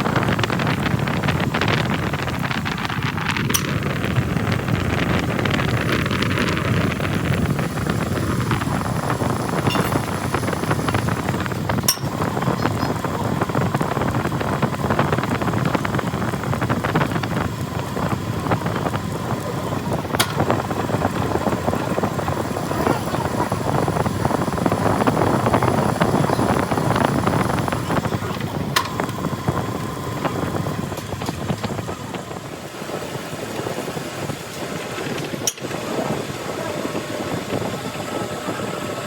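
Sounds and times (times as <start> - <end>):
crackling workshop machine noise: 0.0 - 39.0.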